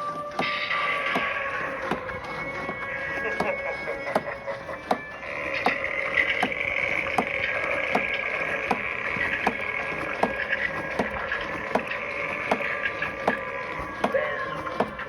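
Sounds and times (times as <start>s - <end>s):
motor whirring: 0.0s - 15.0s.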